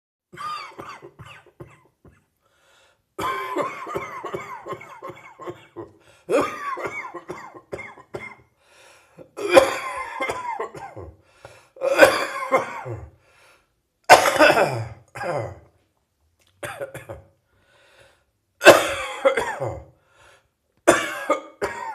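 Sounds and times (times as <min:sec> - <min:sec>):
person coughing: 0:00.4 - 0:02.3, 0:03.2 - 0:08.5, 0:09.2 - 0:11.2, 0:11.8 - 0:13.2, 0:14.1 - 0:15.7, 0:16.6 - 0:17.3, 0:18.6 - 0:20.0, 0:20.9 - 0:21.9.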